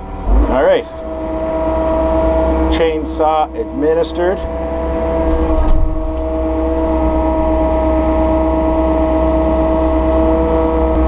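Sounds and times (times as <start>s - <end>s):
diesel engine running steadily: 0.0s - 11.0s.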